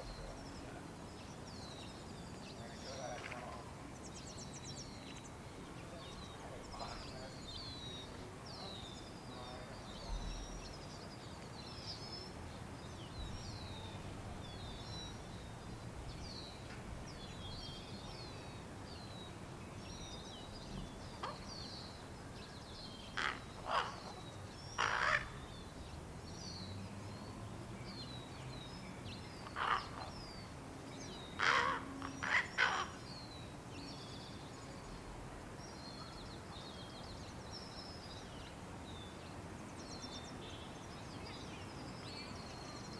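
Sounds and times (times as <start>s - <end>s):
young ravens harsh begging calls: 23.1s - 24.2s, 24.8s - 25.4s, 29.5s - 30.1s, 31.4s - 33.0s.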